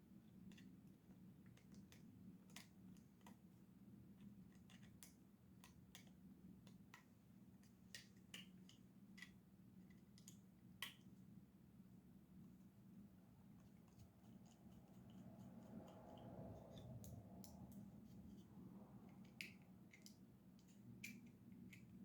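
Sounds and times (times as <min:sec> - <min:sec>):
low steady hum: 0:08.9 - 0:22.0.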